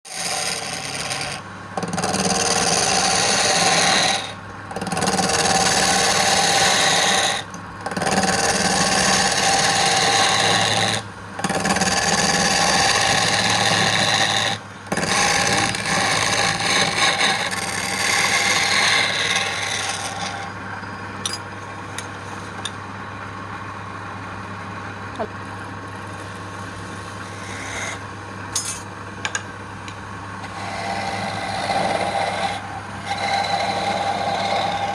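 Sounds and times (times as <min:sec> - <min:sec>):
tool scraping spinning wood: 0:00.0 - 0:21.0, 0:26.0 - 0:28.9, 0:30.4 - 0:34.9
wood lathe humming: 0:00.1 - 0:20.5, 0:26.2 - 0:28.0, 0:30.4 - 0:34.9.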